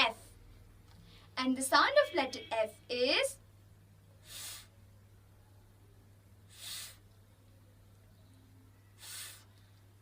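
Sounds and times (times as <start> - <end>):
low steady hum: 0.0 - 10.0.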